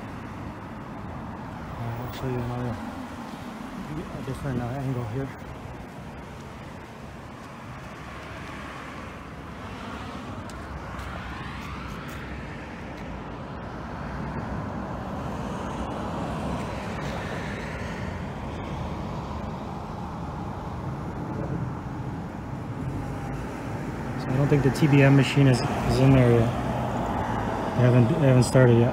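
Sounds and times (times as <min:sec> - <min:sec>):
faint vehicle whine: 0:00.0 - 0:28.9
passing traffic noise: 0:00.0 - 0:28.9.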